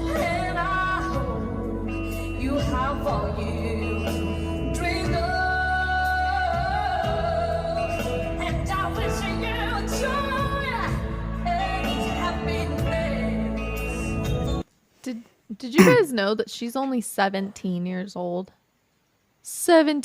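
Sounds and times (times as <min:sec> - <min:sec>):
woman singing slow ballad: 0:00.0 - 0:14.1, 0:15.8 - 0:16.0.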